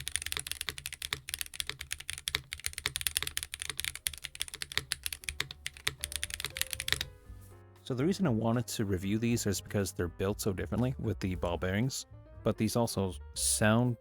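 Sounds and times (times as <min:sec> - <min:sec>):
fast keyboard typing: 0:00.0 - 0:07.1.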